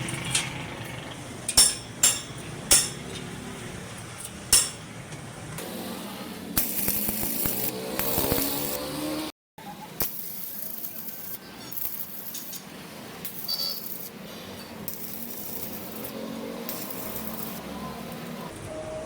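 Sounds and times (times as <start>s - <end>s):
hiss bursts: 6.6s - 9.2s.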